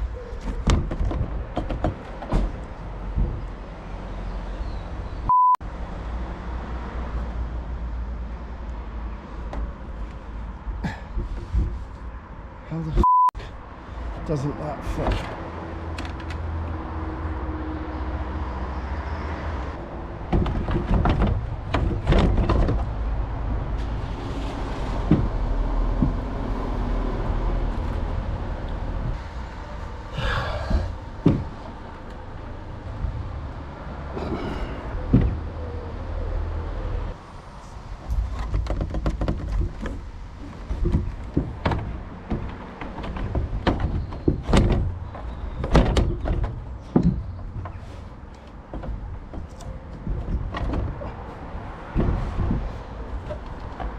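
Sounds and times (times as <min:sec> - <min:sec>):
roof fan knocks and scrapes: 0:00.4 - 0:03.6, 0:20.2 - 0:28.3, 0:38.0 - 0:53.9.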